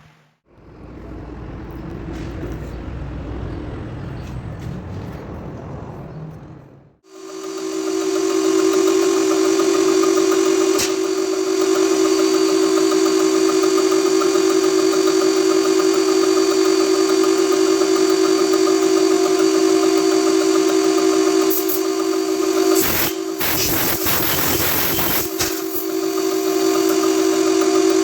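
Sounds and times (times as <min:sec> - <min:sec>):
diesel truck engine idling: 0:00.5 - 0:06.9.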